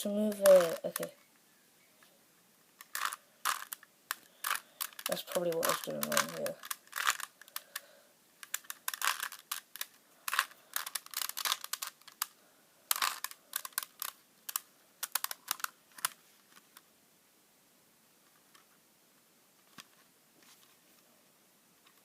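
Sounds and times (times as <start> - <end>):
puzzle cube clicking as turned: 0.3 - 1.1, 2.8 - 7.8, 8.4 - 16.8.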